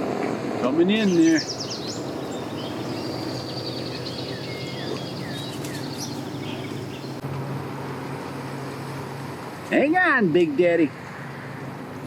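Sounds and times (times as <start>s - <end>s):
birds chirping: 1.0s - 7.2s
low engine hum: 1.0s - 7.2s.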